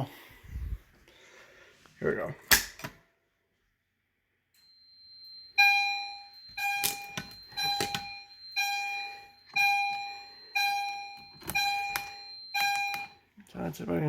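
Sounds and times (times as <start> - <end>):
fire alarm chime: 4.5 - 13.4
faint steady high beep: 4.6 - 13.3.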